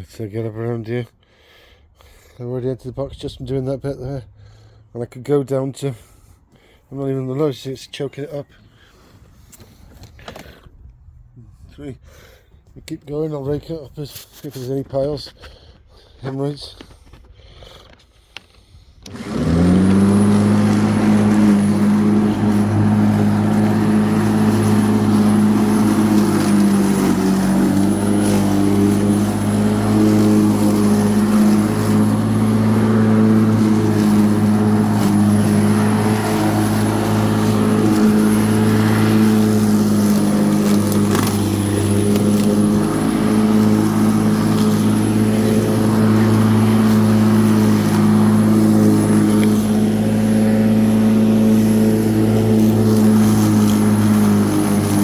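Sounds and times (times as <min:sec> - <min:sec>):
electric lawnmower running: 0:19.0 - 0:55.0.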